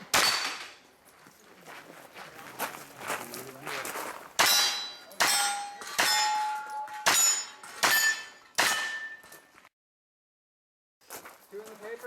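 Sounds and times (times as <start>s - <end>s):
steel targets ringing: 0.1s - 0.8s, 4.4s - 9.4s.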